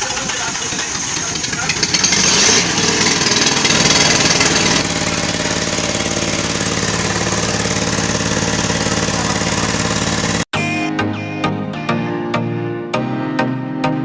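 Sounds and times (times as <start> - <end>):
diesel generator running: 0.0 - 10.5.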